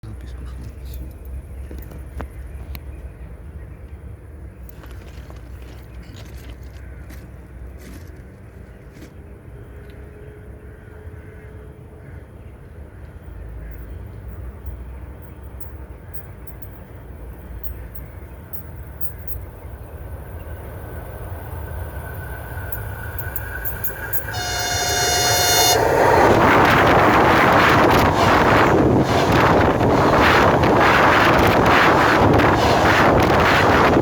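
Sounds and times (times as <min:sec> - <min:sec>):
train rumble: 0:00.0 - 0:34.0
wheels rushing on rails: 0:00.2 - 0:34.0
train horn: 0:23.8 - 0:31.2.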